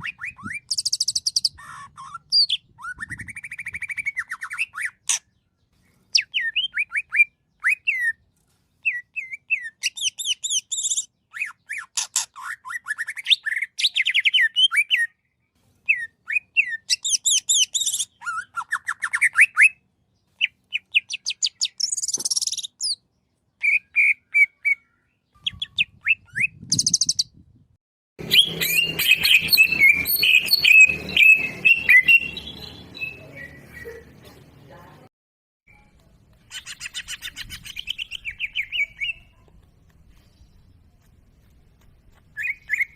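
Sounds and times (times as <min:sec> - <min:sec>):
bird singing chirps and trills: 0:00.0 - 0:15.3, 0:15.9 - 0:27.4, 0:28.2 - 0:34.8, 0:35.7 - 0:40.9, 0:42.2 - 0:42.9.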